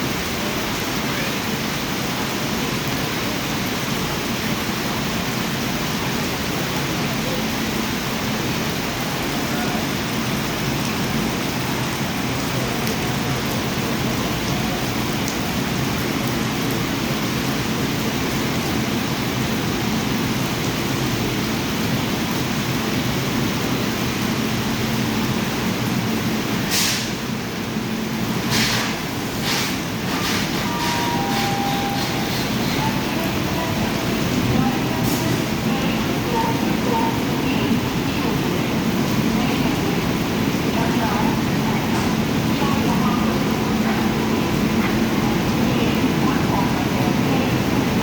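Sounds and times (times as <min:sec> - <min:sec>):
heavy rain falling: 0:00.0 - 0:48.0.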